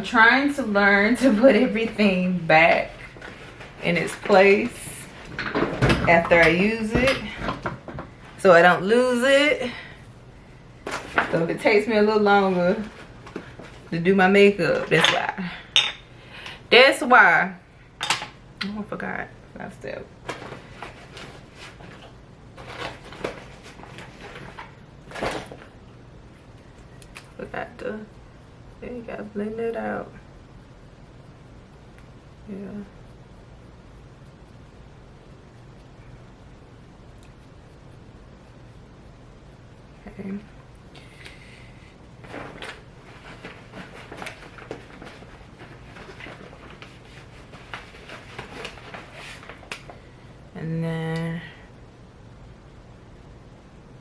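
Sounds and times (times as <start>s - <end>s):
makeup items clicking and rustling: 42.2s - 50.0s.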